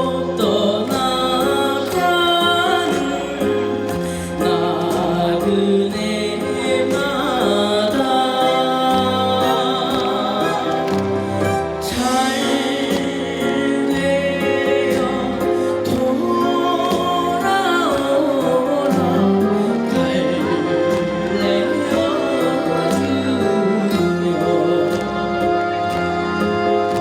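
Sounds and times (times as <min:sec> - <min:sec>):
backing band track: 0:00.0 - 0:27.0
person singing: 0:00.0 - 0:27.0.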